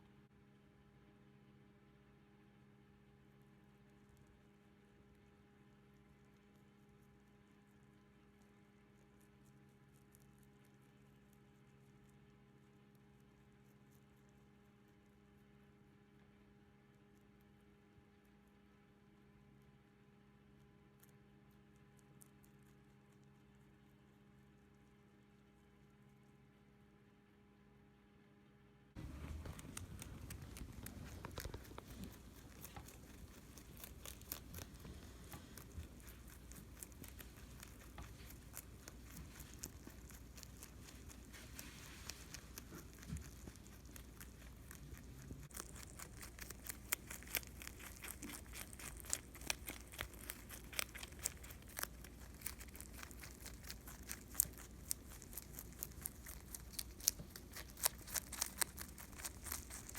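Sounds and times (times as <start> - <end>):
rabbit chewing food: 0.0 - 59.9.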